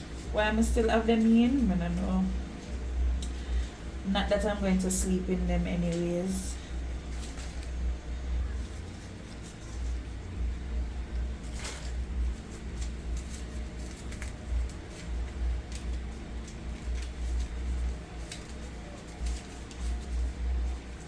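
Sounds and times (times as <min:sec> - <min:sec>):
steady low rumble: 0:00.0 - 0:21.0
hair rods clicking and rustling: 0:11.1 - 0:21.0.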